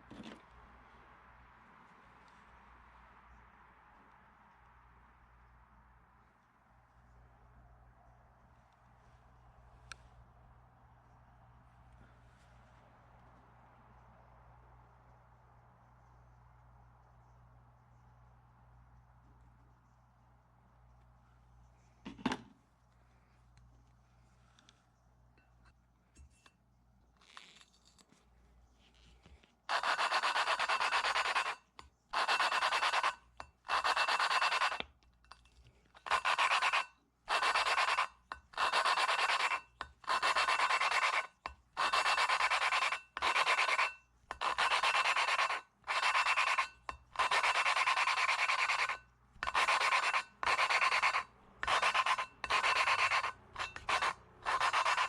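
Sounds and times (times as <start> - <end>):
gritty valve lapping rubbing: 36.0 - 55.0.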